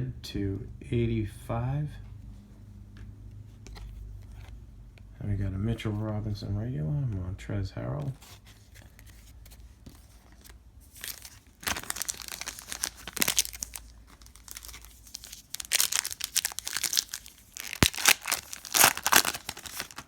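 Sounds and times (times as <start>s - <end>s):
wrapper tearing and crinkling: 10.9s - 20.0s.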